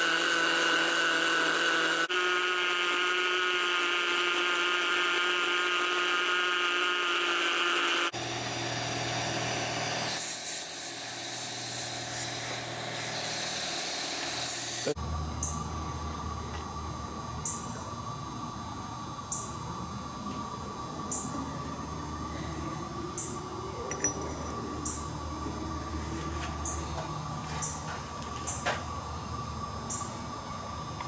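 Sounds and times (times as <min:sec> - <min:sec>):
rotary tool cutting metal: 0:00.0 - 0:15.0.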